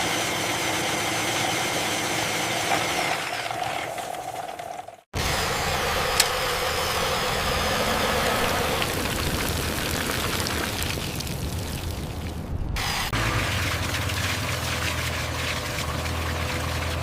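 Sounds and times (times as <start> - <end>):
motor rumbling: 5.2 - 17.0
sharp click: 6.1 - 6.4.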